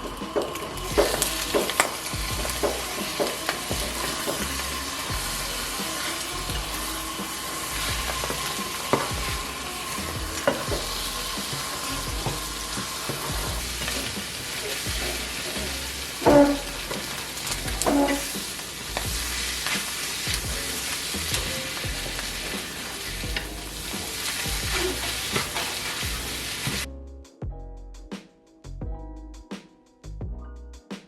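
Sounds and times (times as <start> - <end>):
food sizzling in a pan: 0.0 - 26.9
utensil knocking against pan: 0.3 - 4.7.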